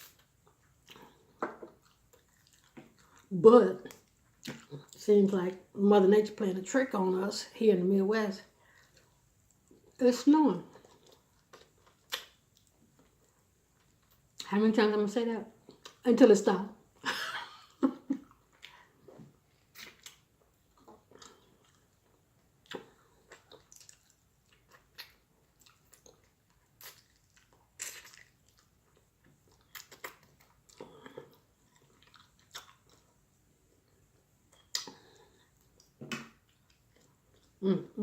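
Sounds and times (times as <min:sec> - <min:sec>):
person chewing food: 0:00.0 - 0:05.0, 0:08.6 - 0:10.0, 0:10.7 - 0:14.4, 0:17.6 - 0:37.6.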